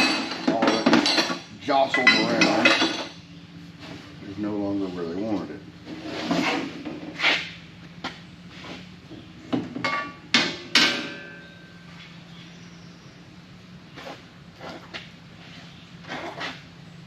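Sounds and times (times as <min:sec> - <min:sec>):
metal parts clanking: 0:00.0 - 0:03.2.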